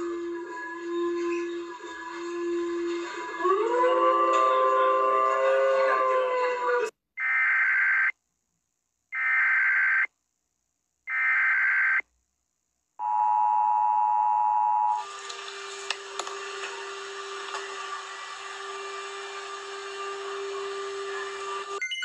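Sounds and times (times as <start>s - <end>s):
low steady tone: 13.0s - 15.0s.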